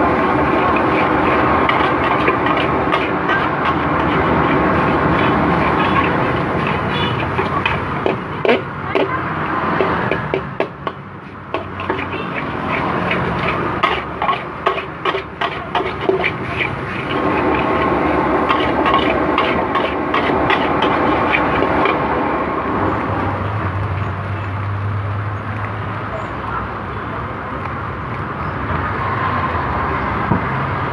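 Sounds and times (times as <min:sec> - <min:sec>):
metal spatula scraping a wok: 0:00.0 - 0:23.4
stir-frying rushing noise: 0:00.0 - 0:24.3.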